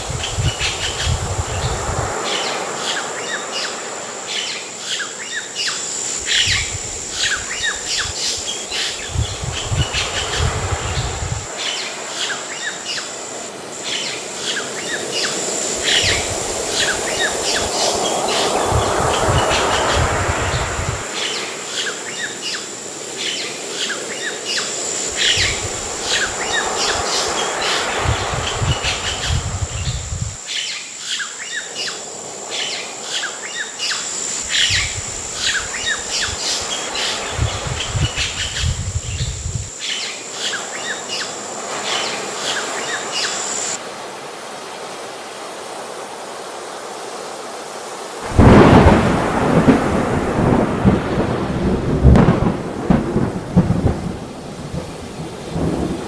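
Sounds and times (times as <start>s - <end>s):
heavy rain: 0.0s - 4.8s, 5.6s - 30.5s, 34.1s - 56.0s
birds chirping: 0.0s - 13.2s, 13.8s - 32.0s, 32.6s - 43.8s
water rushing: 5.6s - 30.5s, 33.8s - 56.0s
thunderclap: 48.2s - 56.0s.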